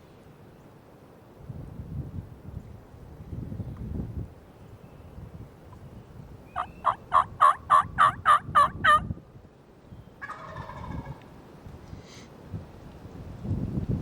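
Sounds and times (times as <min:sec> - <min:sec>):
turkey call raspy yelps: 0:06.6 - 0:09.1.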